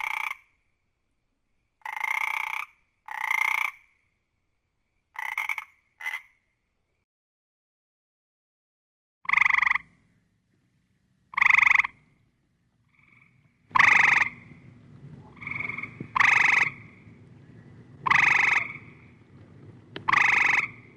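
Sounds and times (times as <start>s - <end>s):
frog croaking: 0.0s - 0.5s, 1.8s - 3.9s, 5.1s - 6.4s, 9.2s - 10.0s, 11.3s - 12.2s, 12.8s - 20.9s
low background hum: 9.8s - 20.9s.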